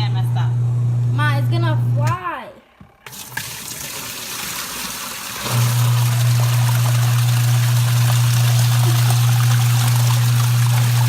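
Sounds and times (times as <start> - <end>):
washing machine motor humming: 0.0 - 2.2, 2.8 - 11.0
water pouring into tub: 3.1 - 11.0.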